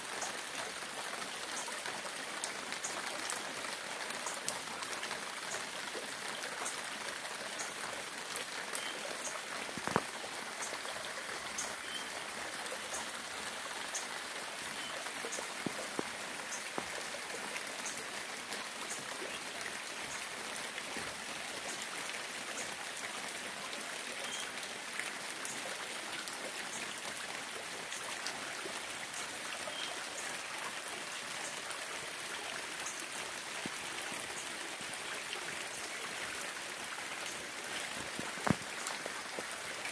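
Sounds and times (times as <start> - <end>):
steady rain: 0.0 - 39.9
raindrops ticking: 0.1 - 22.8, 32.7 - 39.9.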